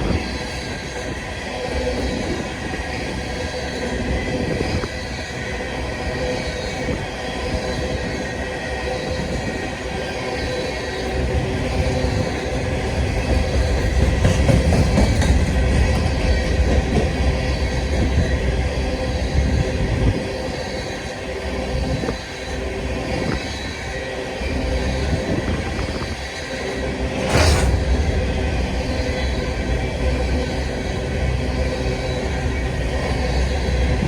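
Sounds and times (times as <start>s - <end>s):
freight train wheels clattering: 12.2s - 18.2s, 26.8s - 29.9s.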